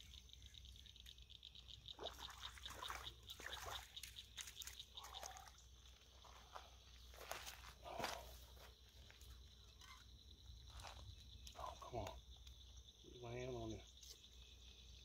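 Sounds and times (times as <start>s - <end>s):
faint water splashing: 1.6s - 8.4s.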